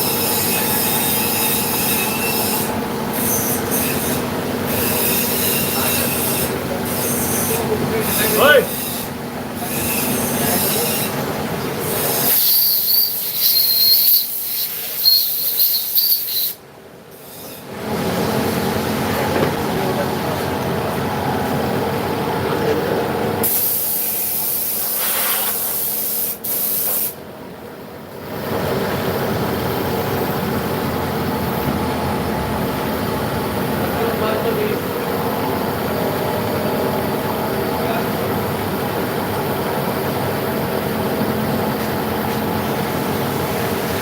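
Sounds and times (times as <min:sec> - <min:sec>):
machining center running: 0:00.0 - 0:12.3, 0:16.6 - 0:23.6, 0:27.2 - 0:44.0.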